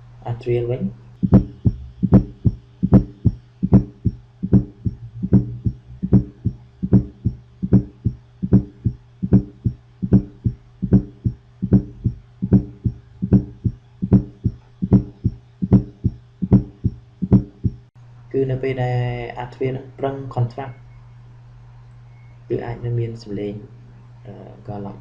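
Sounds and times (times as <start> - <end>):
low hum: 0.0 - 18.3
heartbeat: 1.2 - 17.9.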